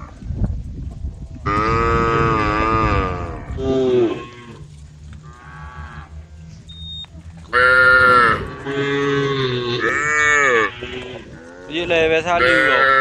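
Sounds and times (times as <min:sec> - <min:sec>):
cows mooing: 0:01.4 - 0:06.7, 0:07.4 - 0:13.0.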